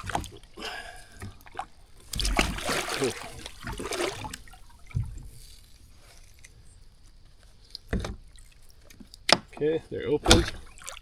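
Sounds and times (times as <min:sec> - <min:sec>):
water splashing and trickling: 0:00.0 - 0:11.0
dull knocks: 0:07.9 - 0:08.3, 0:10.2 - 0:10.9.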